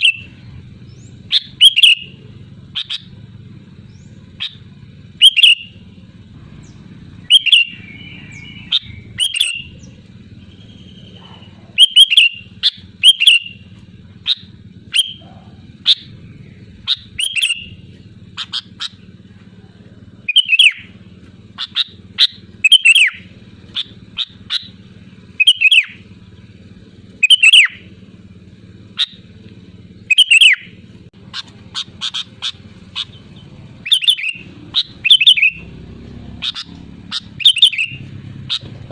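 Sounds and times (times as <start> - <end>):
bird calling sharp whistles: 0.0 - 3.2, 3.8 - 5.9, 6.6 - 19.1, 20.2 - 26.2, 27.2 - 27.9, 28.9 - 29.2, 29.9 - 35.7, 36.4 - 38.7.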